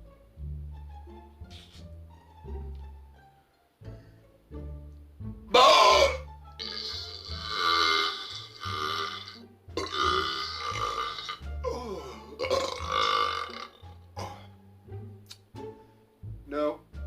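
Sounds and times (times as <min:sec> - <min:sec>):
man belching loudly: 0:05.5 - 0:14.5.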